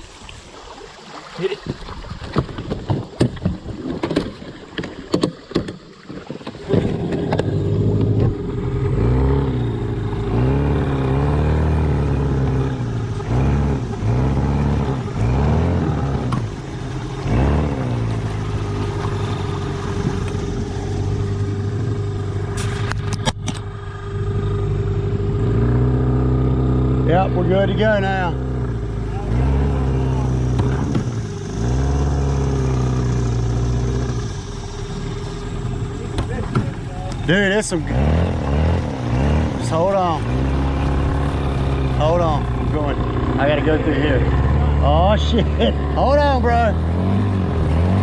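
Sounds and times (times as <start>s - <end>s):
boat motor revving: 1.4s - 48.0s
clatter and knocks: 2.3s - 8.4s.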